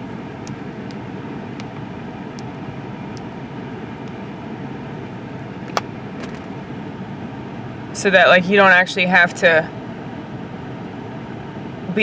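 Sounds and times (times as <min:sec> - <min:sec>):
car cabin rumble: 0:00.0 - 0:07.1.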